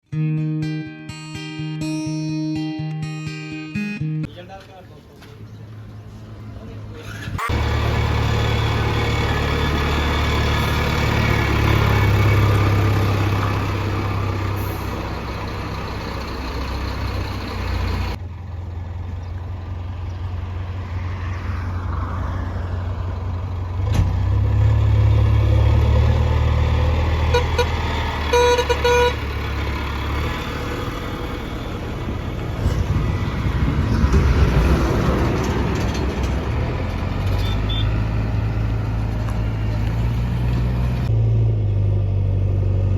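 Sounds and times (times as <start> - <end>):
heavy diesel engines rumbling: 4.2 - 42.9
vehicle horn toots: 27.3 - 29.2, 37.3 - 38.0.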